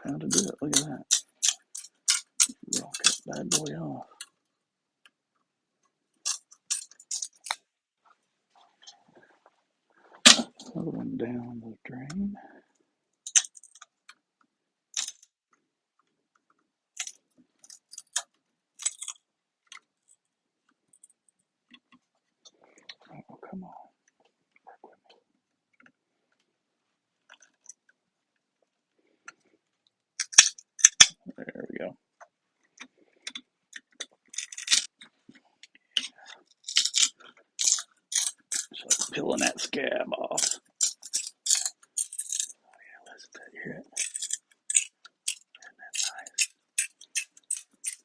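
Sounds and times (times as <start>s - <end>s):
crackling as piece is pried off: 17.0s - 19.8s, 33.3s - 35.2s, 36.0s - 39.6s.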